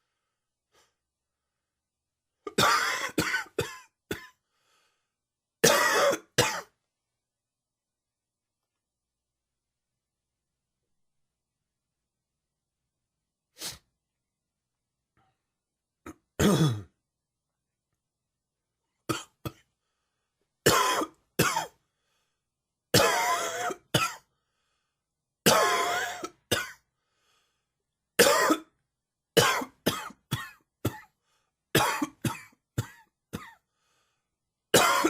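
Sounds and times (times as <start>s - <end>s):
man coughing: 2.5s - 4.4s, 5.6s - 6.7s, 16.1s - 17.0s, 20.7s - 21.7s, 23.0s - 24.2s, 25.5s - 26.8s, 28.2s - 28.7s, 29.4s - 31.1s, 31.8s - 33.6s, 34.8s - 35.0s.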